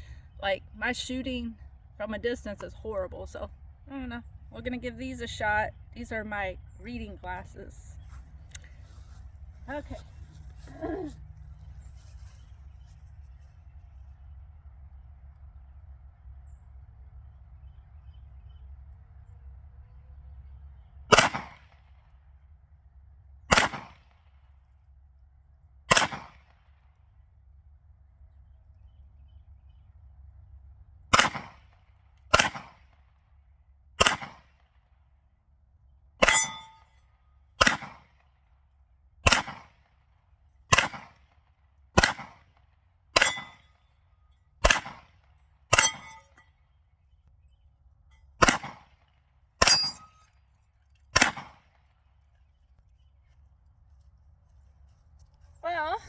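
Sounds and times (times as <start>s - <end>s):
pistol shots: 21.1s - 21.6s, 23.5s - 24.0s, 25.9s - 26.4s, 31.1s - 31.6s, 32.3s - 32.8s, 34.0s - 34.4s, 37.6s - 38.1s, 39.2s - 39.7s, 40.7s - 41.2s, 42.0s - 42.4s, 43.2s - 43.6s, 44.6s - 45.1s, 48.4s - 48.9s, 51.1s - 51.6s
steel target ringing: 36.2s - 36.9s, 43.2s - 43.7s, 45.7s - 46.5s, 49.6s - 50.3s.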